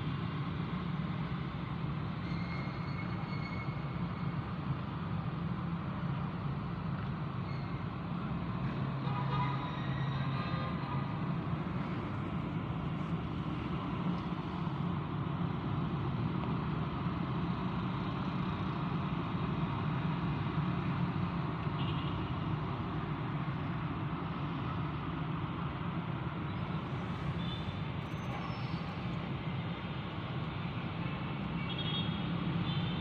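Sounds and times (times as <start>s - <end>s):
traffic rumble: 0.0s - 33.0s.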